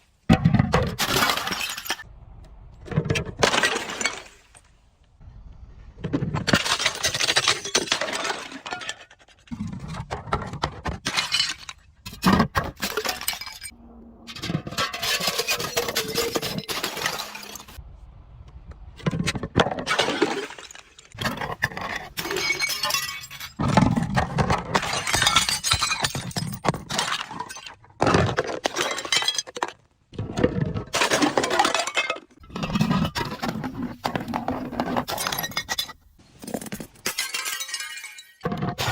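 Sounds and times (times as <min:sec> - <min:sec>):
glass bottles being crushed: 0:01.0 - 0:02.0, 0:06.4 - 0:09.1, 0:10.9 - 0:13.7, 0:14.7 - 0:17.8, 0:19.9 - 0:29.8, 0:30.6 - 0:38.9.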